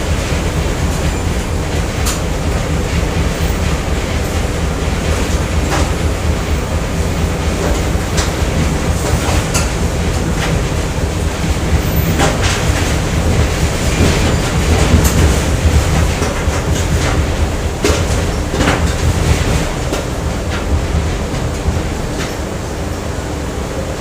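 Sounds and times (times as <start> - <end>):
machinery low rumble: 0.0 - 24.0
metallic clicks and clanks: 7.4 - 20.7.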